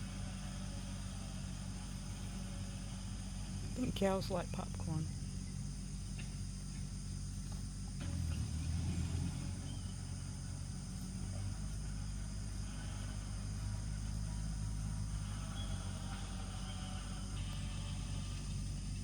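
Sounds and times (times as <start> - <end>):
insects chirping: 0.0 - 19.0
low steady hum: 0.0 - 19.0.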